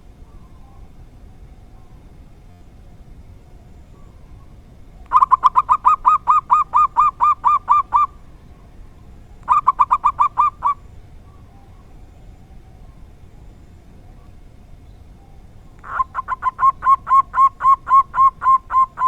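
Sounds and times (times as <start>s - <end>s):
dove singing rapid notes: 4.0s - 12.3s, 15.5s - 19.0s.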